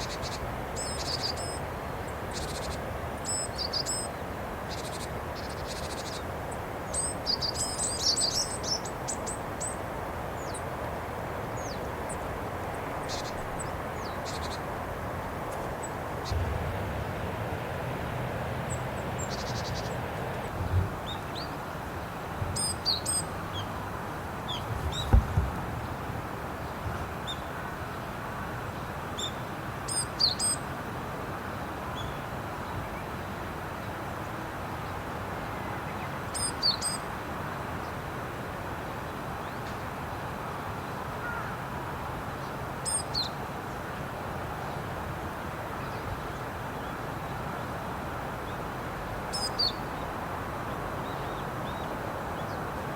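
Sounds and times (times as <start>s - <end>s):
background noise: 0.0s - 52.9s
low thumps: 24.8s - 25.8s.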